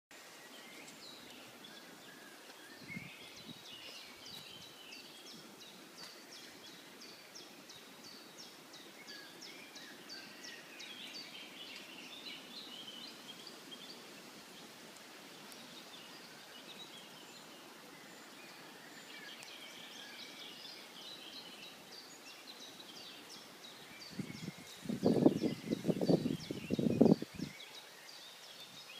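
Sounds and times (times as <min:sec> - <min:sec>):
faint steady hiss: 0:00.1 - 0:28.9
birds chirping and trilling: 0:00.3 - 0:28.9.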